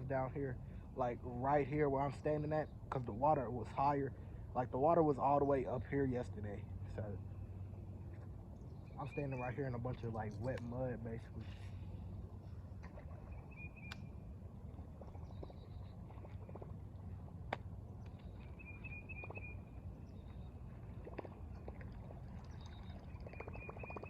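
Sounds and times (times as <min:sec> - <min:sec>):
low rumble: 0:00.0 - 0:24.0
bird trilling: 0:08.7 - 0:09.8, 0:13.2 - 0:14.2, 0:18.3 - 0:20.6, 0:22.6 - 0:24.0.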